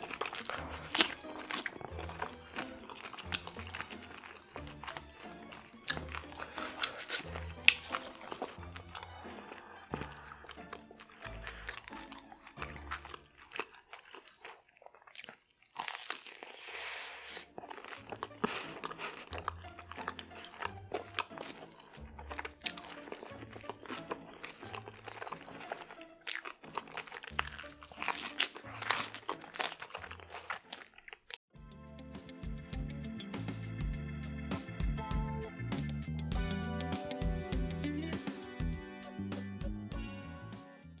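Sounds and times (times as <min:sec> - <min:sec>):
crunchy bites and chewing: 0:00.0 - 0:31.4
background music with bass line: 0:31.6 - 0:41.0.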